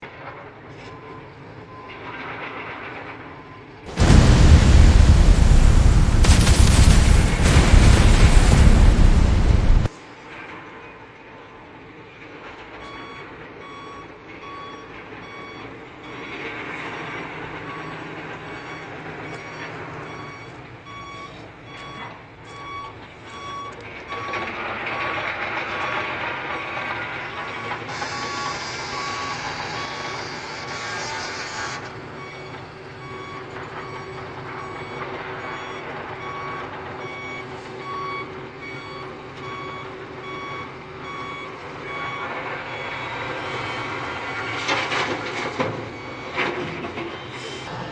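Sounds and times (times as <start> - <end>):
back-up alarm beeping: 32.2 - 44.4.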